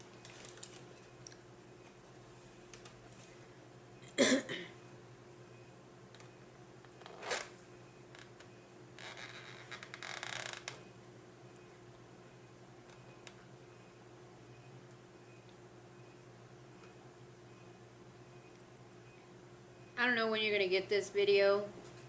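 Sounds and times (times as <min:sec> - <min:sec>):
crinkly rustling with clicks: 0:00.0 - 0:01.4.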